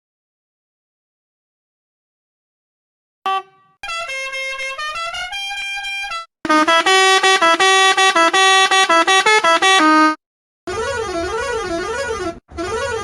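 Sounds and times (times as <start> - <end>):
musical car horn playing a tune: 3.3 - 13.0.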